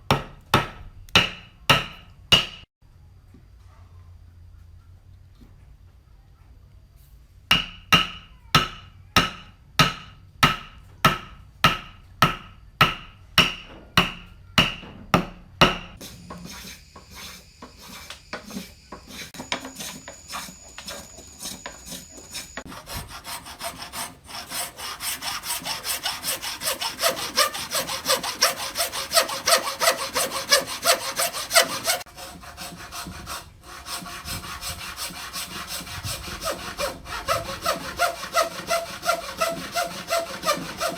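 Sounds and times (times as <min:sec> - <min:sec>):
chisel being hammered into wood: 0:00.1 - 0:02.7, 0:07.5 - 0:16.0
hand saw cutting wood: 0:16.0 - 0:40.9.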